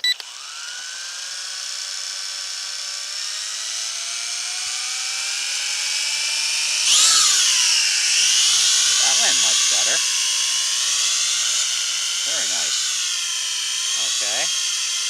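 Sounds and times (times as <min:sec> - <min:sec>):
drone propellers whining: 0:00.0 - 0:15.0.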